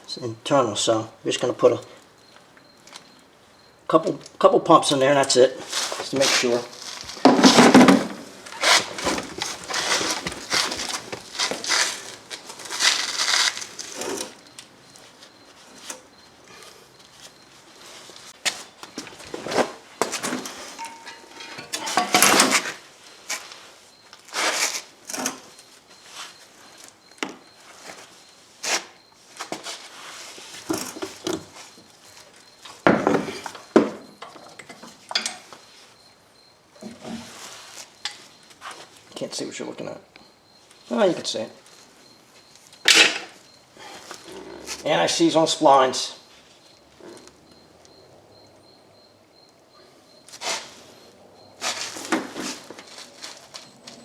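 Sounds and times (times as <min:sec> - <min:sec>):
metal tools clinking: 0:05.2 - 0:14.6, 0:19.5 - 0:22.8, 0:34.2 - 0:35.5.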